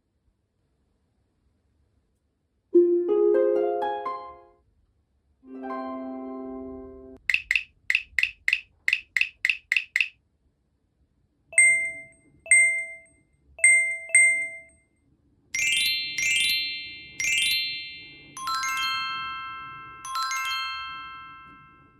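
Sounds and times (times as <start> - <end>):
glockenspiel-like chime notes: 5.5 - 7.2, 11.6 - 14.7, 15.6 - 21.9.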